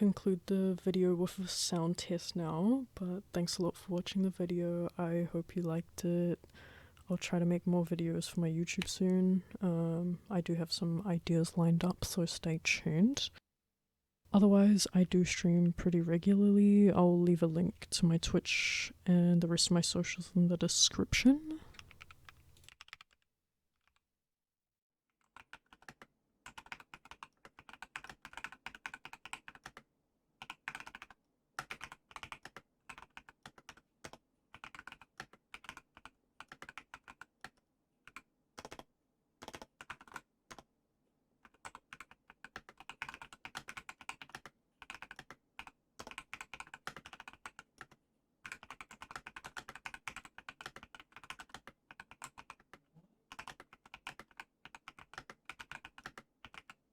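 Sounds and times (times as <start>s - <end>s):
keyboard typing: 21.4s - 23.2s, 25.3s - 29.8s, 30.4s - 40.7s, 41.4s - 56.8s.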